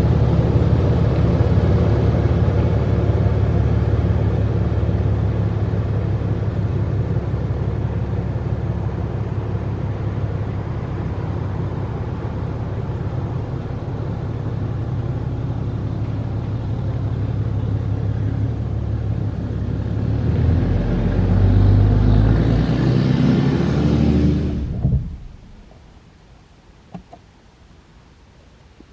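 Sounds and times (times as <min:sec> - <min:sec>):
diesel engine idling: 0:00.0 - 0:22.3.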